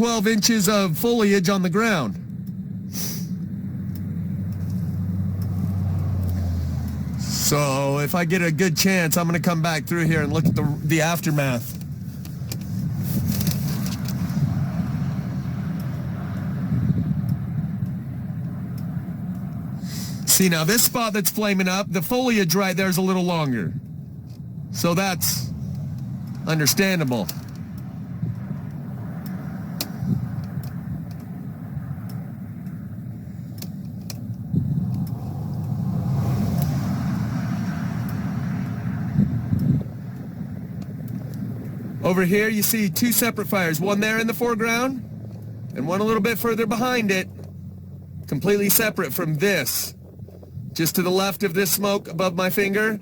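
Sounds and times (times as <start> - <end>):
car engine and road noise: 0.0 - 53.0
faint clicks: 2.1 - 14.6, 15.4 - 37.2, 39.5 - 41.8.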